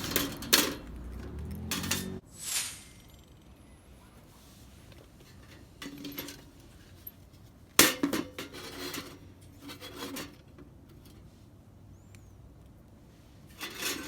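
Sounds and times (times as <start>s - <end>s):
metal pieces clattering: 1.5s - 2.2s.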